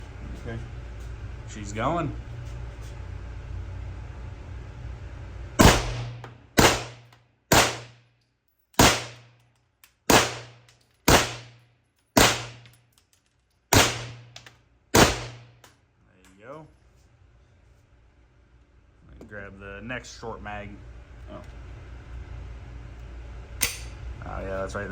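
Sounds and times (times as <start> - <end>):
suppressed pistol shots: 5.6 - 7.9, 8.8 - 9.2, 10.1 - 11.5, 12.2 - 12.6, 13.7 - 14.3, 15.0 - 15.5.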